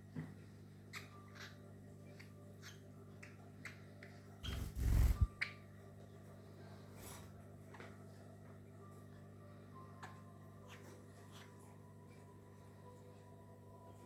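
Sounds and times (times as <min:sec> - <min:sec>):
birds chirping: 0:00.9 - 0:05.6
steady low hum: 0:04.4 - 0:05.4.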